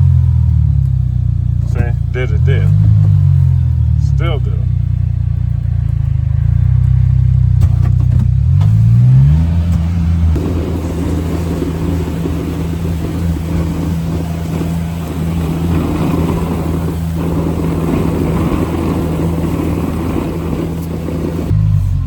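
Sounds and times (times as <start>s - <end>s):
engine running under load: 0.0s - 22.0s
snow plow scraping: 0.0s - 22.0s.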